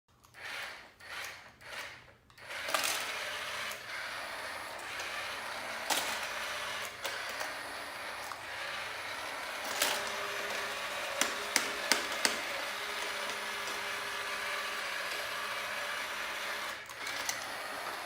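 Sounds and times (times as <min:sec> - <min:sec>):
small machine running: 0:00.2 - 0:18.0
sharp clicks or knocks: 0:11.1 - 0:12.5.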